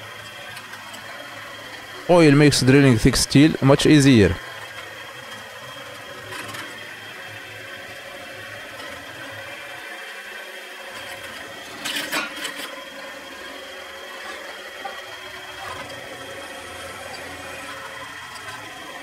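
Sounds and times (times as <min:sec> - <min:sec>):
electric drill cutting steel: 0:10.9 - 0:19.0.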